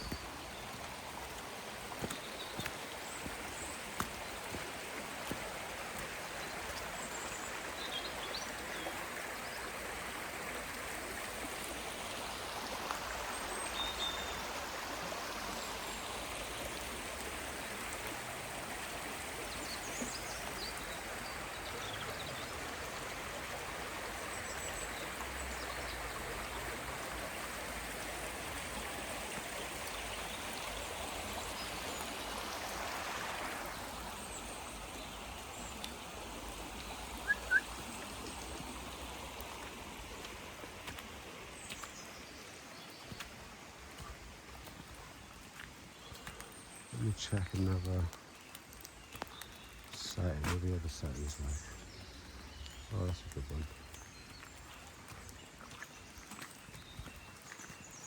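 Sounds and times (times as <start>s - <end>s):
flowing water rushing: 0.0s - 58.0s
faint high chirps: 37.2s - 38.0s.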